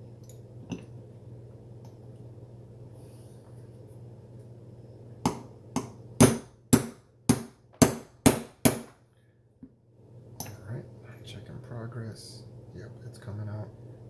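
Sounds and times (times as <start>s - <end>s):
hammer striking metal punch: 5.3s - 9.0s.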